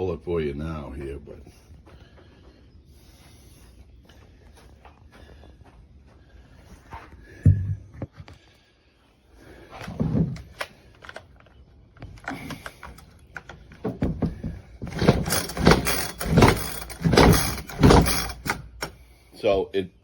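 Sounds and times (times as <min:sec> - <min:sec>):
chainsaw pull-starter cord pulls: 0:12.2 - 0:19.0.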